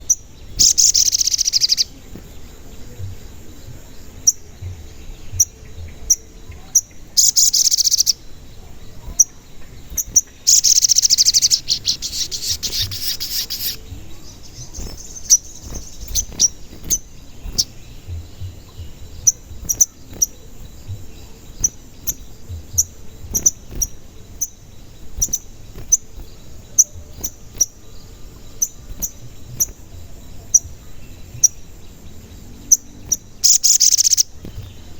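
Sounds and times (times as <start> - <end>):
bird chirping: 0.0 - 34.9
bird rapid trills: 0.0 - 34.9.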